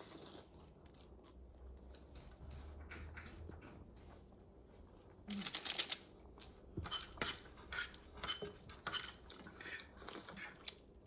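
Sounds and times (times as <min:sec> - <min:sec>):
utensils clinking against bowl: 0:06.8 - 0:10.6.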